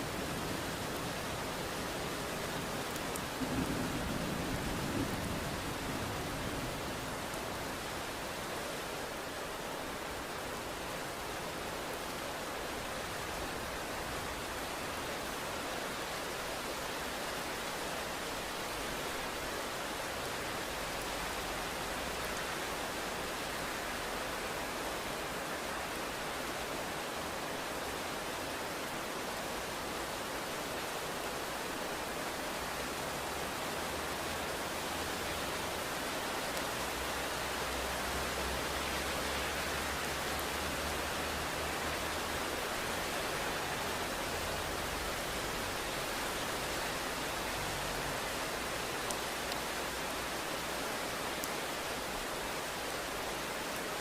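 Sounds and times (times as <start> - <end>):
dense rainfall hissing: 0.0 - 54.0
distant thunder rumble: 3.4 - 6.9.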